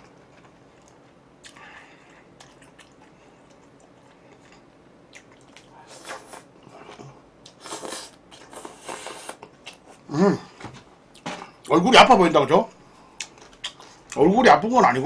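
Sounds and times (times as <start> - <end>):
person chewing food: 0.0 - 10.1, 13.1 - 14.2.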